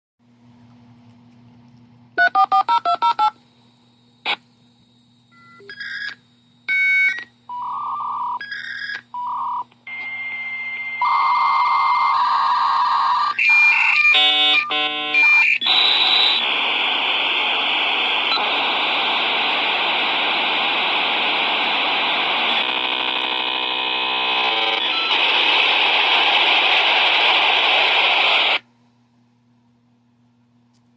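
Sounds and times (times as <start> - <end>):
modem hissing screech: 12.4 - 18.6.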